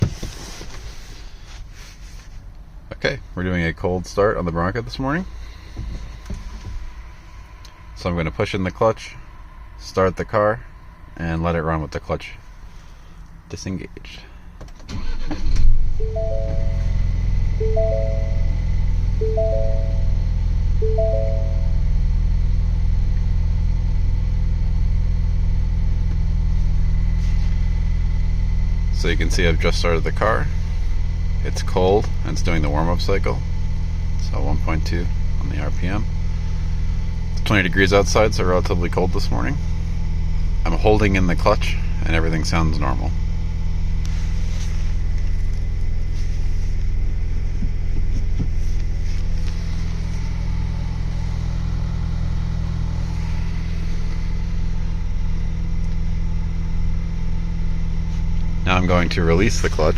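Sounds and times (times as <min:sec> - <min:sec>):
car engine idling: 0:00.0 - 0:59.9.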